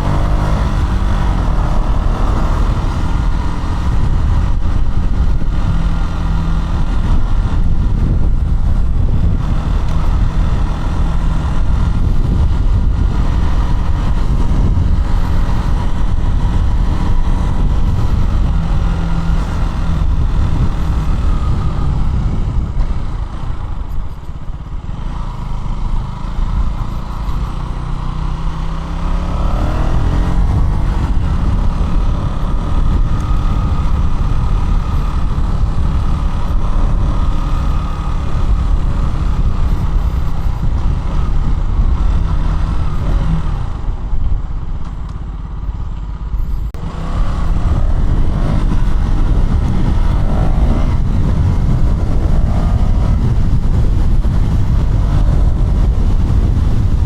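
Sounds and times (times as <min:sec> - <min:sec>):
motorcycle engine revving: 0:00.0 - 0:57.0.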